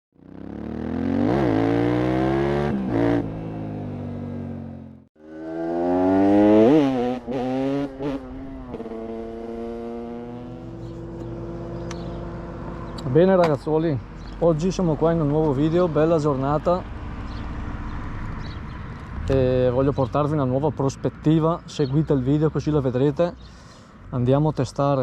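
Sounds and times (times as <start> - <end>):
motorcycle engine revving hard: 0.2 - 12.6.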